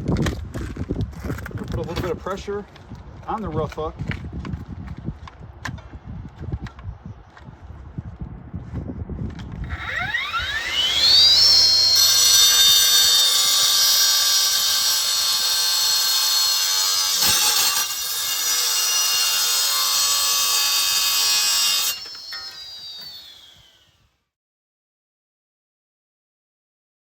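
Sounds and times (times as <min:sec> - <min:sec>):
cut-off saw grinding metal chain: 0:09.6 - 0:23.6.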